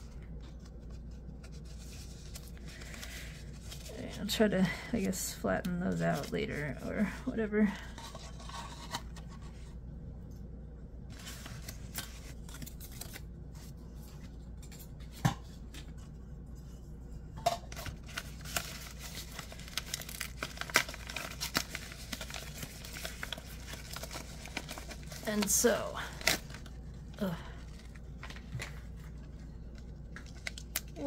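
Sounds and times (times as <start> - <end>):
hands opening packaging: 17.7 - 26.8, 27.7 - 31.0.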